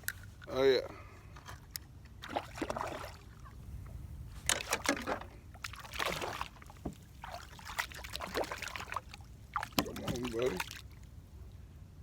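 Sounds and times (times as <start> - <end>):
fish splashing in water: 4.6 - 11.0.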